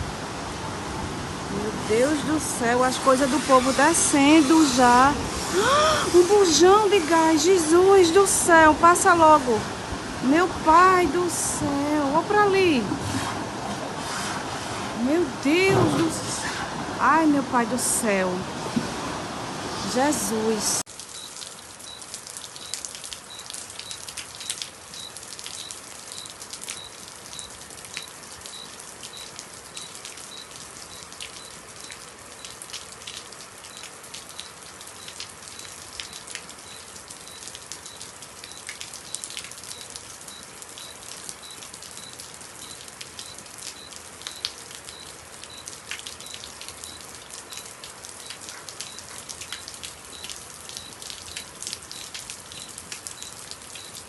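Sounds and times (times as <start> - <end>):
heavy rain on hard surface: 0.0 - 54.0
faint high beeps: 21.2 - 32.6, 34.4 - 54.0.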